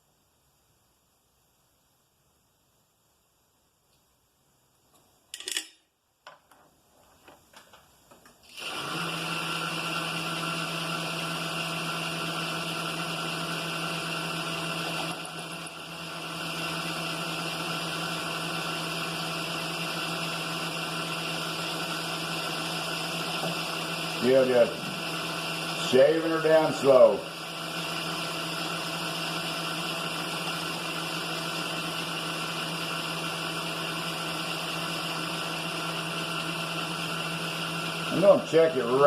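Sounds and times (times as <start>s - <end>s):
milling machine spindle humming: 8.5s - 39.0s.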